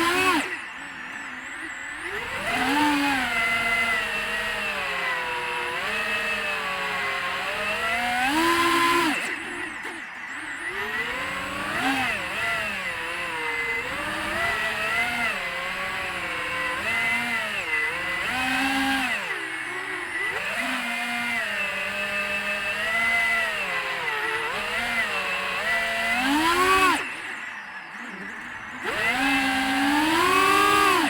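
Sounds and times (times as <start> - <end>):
drone motors whining: 0.0 - 31.0.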